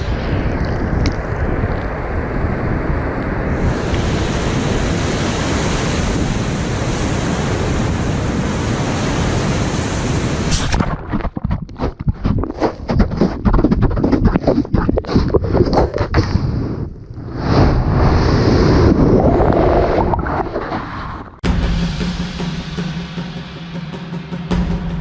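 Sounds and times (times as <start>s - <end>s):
ocean surf: 0.0s - 10.8s
wind buffeting microphone: 0.0s - 21.4s.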